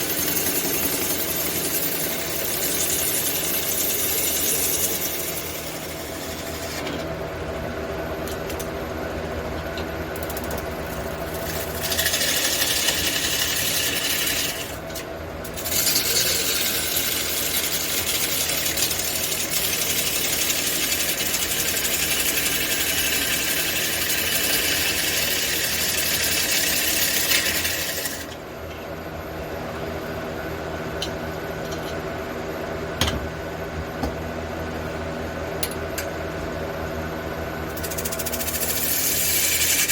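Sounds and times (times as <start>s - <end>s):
wood lathe motor running: 0.0s - 7.6s, 10.2s - 28.4s, 37.8s - 39.9s.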